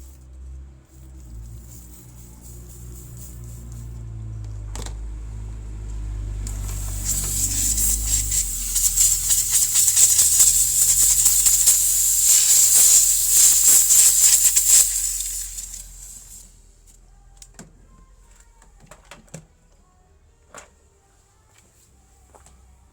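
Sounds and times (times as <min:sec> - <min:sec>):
loud rattling spray hiss: 0:00.9 - 0:04.4, 0:05.5 - 0:16.8.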